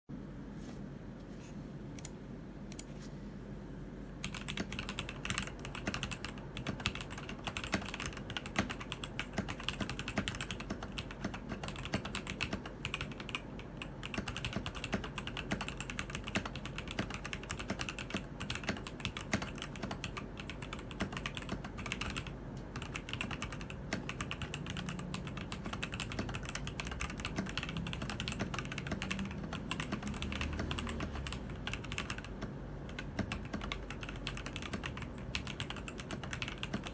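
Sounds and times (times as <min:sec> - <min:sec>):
mechanical keyboard typing: 0:04.2 - 0:36.9.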